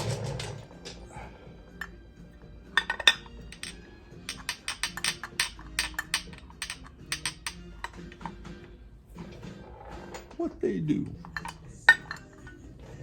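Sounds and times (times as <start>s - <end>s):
faint background music: 0.0s - 13.0s
hand tools clicking on metal: 2.8s - 8.6s, 11.1s - 12.6s.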